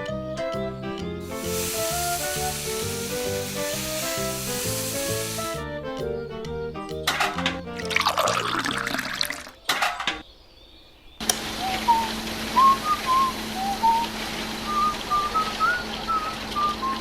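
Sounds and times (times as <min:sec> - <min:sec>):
music with falling swoop: 0:00.0 - 0:09.2
steady hiss and hum: 0:01.2 - 0:05.6, 0:10.7 - 0:17.0
bird-like whistled chirps: 0:09.4 - 0:17.0.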